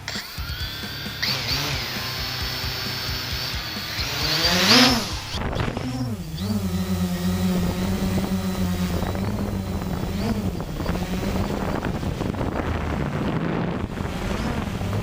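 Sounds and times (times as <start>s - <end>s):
quadcopter propellers humming: 0.0s - 15.0s
wind noise on microphone: 0.4s - 15.0s.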